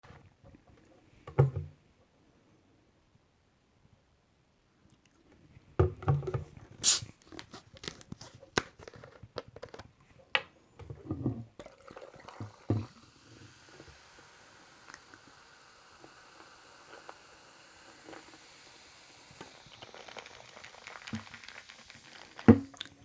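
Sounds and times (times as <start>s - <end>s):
carbonation fizz: 6.8s - 7.2s, 11.6s - 23.0s
short bright hiss: 6.8s - 7.2s, 13.2s - 23.0s
liquid sounds: 11.6s - 23.0s
clicks and taps of can: 19.3s - 23.0s.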